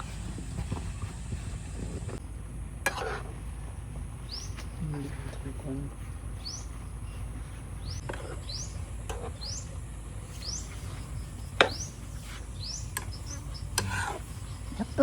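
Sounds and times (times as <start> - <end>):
steady low rumble: 0.0 - 15.0
bird rising chirp: 4.2 - 4.8, 5.9 - 15.0.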